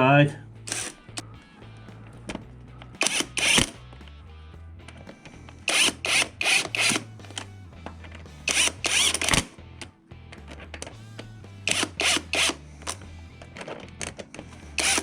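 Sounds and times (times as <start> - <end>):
low background music: 0.0 - 15.0
cordless power driver bursts: 0.7 - 1.3, 3.0 - 3.8, 5.6 - 7.6, 8.4 - 9.5, 11.7 - 13.0, 14.4 - 15.0.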